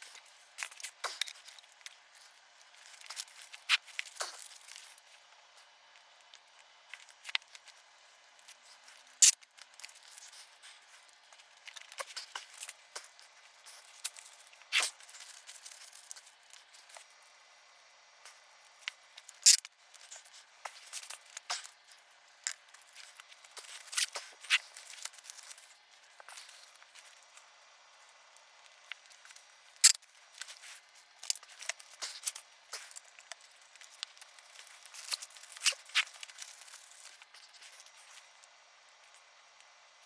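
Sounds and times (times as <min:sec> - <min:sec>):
circuit boards clicking and rustling: 0:00.0 - 0:17.1, 0:18.6 - 0:27.5, 0:28.6 - 0:38.4.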